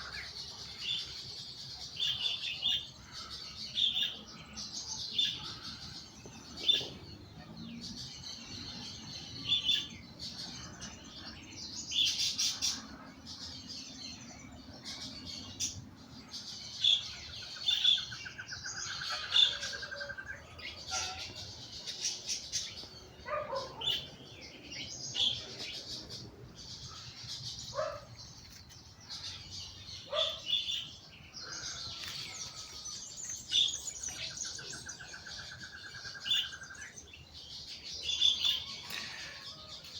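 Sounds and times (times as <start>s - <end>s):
birds chirping: 0.0s - 39.9s
low falling bird calls: 17.5s - 37.0s.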